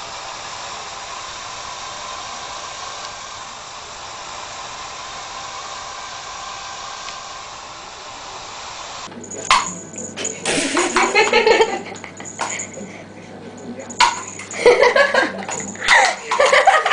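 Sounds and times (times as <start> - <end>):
hair dryer running: 0.0 - 12.8, 13.8 - 16.9.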